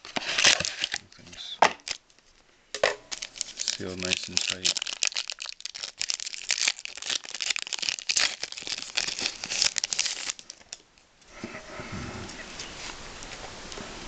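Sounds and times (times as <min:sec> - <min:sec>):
wrapper crinkling and tearing: 0:00.0 - 0:02.3, 0:03.1 - 0:10.8
soft rustle: 0:08.8 - 0:14.0.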